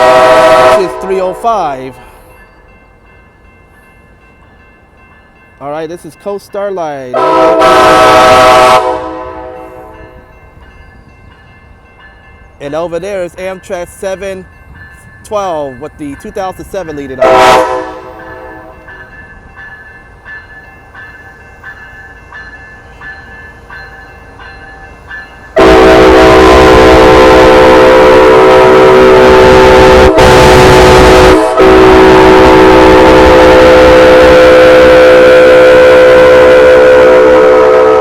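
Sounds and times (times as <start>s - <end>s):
locomotive horn chord: 0.0s - 1.4s, 7.1s - 10.0s, 17.2s - 18.9s, 25.6s - 38.0s.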